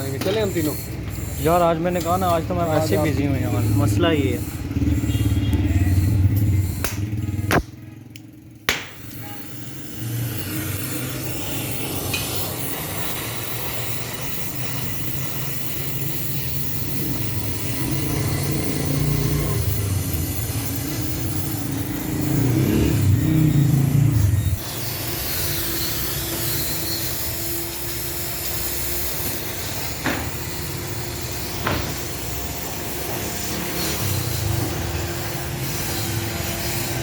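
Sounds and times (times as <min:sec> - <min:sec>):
arc welding sizzling crackle: 0:00.0 - 0:37.0
sharp clicks: 0:06.4 - 0:09.2.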